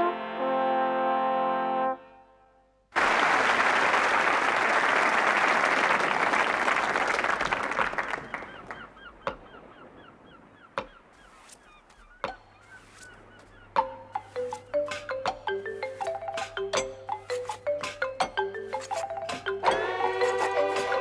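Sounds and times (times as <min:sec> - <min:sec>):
studio audience applause: 0:03.0 - 0:08.8
sharp knocks: 0:13.7 - 0:19.8.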